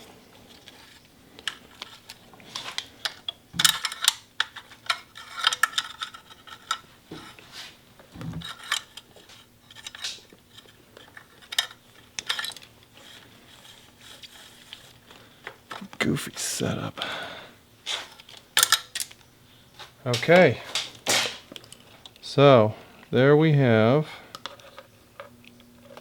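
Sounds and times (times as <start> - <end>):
small metal parts clattering: 0.5 - 7.4, 8.4 - 15.8, 18.0 - 19.2.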